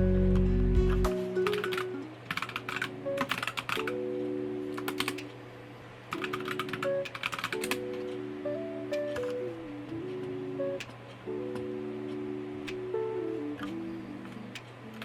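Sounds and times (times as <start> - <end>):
gentle background music: 0.0 - 15.0
rapid clicks: 1.4 - 4.0, 4.8 - 5.4, 6.1 - 7.9.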